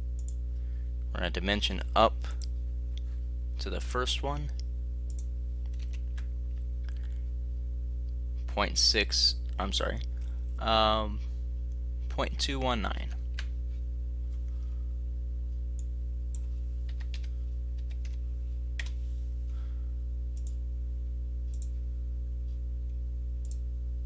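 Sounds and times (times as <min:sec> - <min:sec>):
steady electrical hum: 0:00.0 - 0:24.0
computer mouse clicks: 0:05.1 - 0:06.3, 0:20.4 - 0:20.6, 0:21.5 - 0:21.7.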